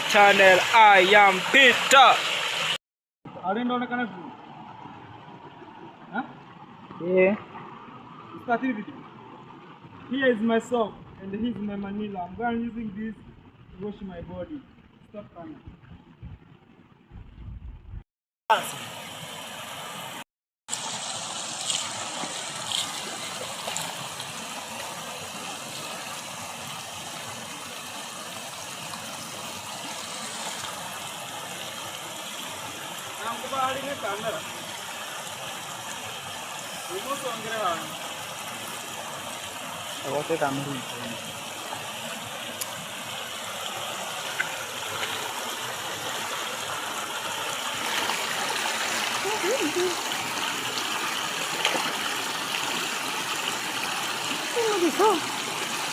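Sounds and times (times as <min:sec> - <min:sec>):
river rushing: 0:00.0 - 0:02.8, 0:18.5 - 0:55.9.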